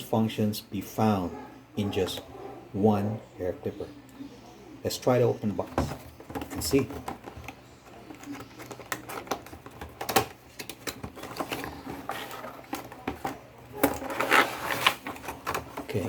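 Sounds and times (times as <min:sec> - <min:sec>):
packaging clicks and rustles: 0:05.6 - 0:16.0.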